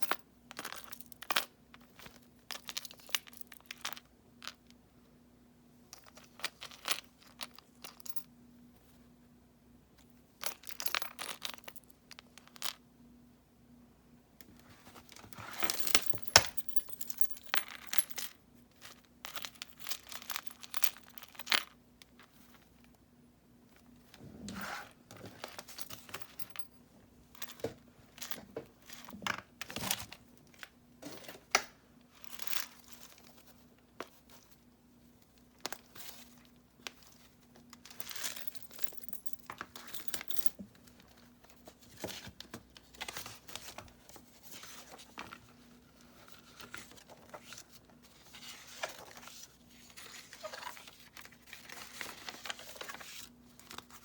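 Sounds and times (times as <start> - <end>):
paper pages rustling: 41.8 - 54.0.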